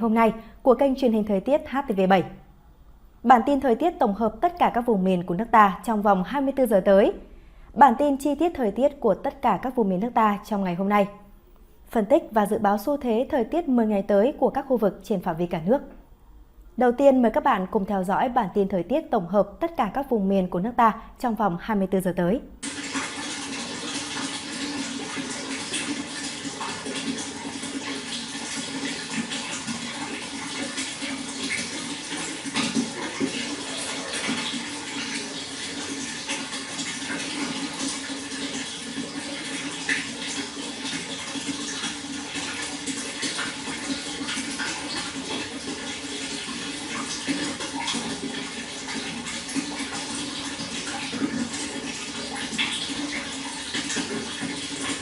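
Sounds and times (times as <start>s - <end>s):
water flowing: 22.6s - 55.0s
water splashes and drips: 22.6s - 55.0s.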